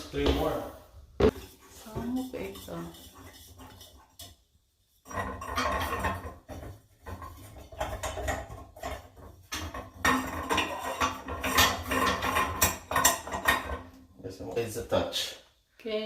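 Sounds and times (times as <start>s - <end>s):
hard objects clattering and clinking: 5.0s - 14.2s.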